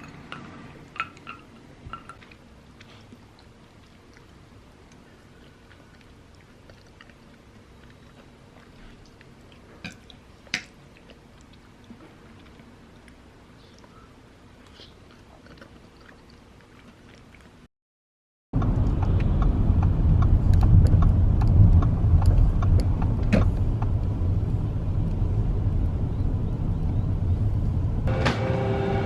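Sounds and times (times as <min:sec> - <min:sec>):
loud steady low rumble: 0:18.6 - 0:29.0.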